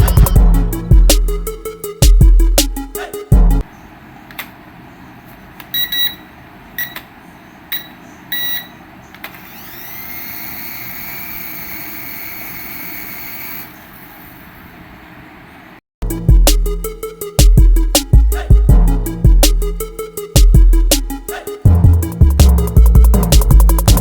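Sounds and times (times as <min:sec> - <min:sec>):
toy electronic beeps: 0:05.7 - 0:07.0, 0:07.7 - 0:08.8
small electric motor whining: 0:09.3 - 0:14.3.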